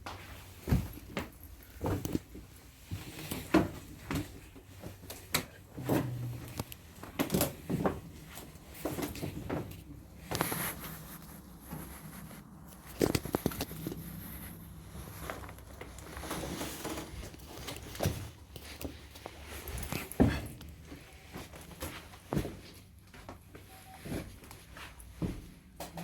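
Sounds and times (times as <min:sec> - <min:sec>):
clothing rustling: 0:00.1 - 0:25.6
scuffing footsteps: 0:06.4 - 0:25.6.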